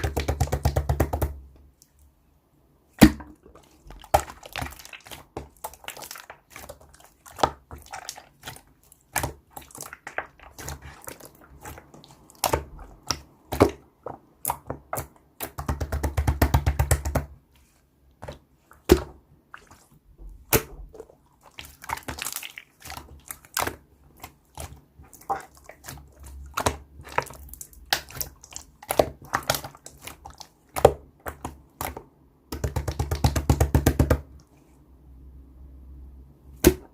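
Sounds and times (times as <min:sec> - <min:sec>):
slime squished by hand: 0:03.0 - 0:34.4.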